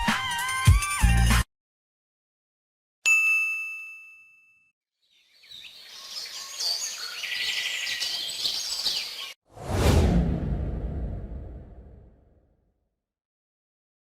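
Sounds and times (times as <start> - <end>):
birds chirping and trilling: 5.0 - 9.4.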